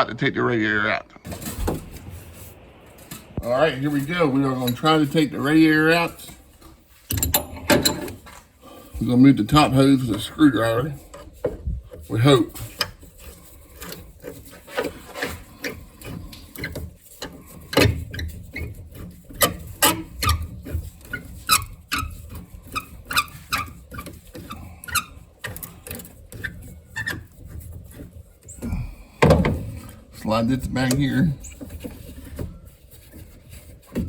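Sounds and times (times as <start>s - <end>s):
rubber hose squeaks: 9.0s - 34.0s.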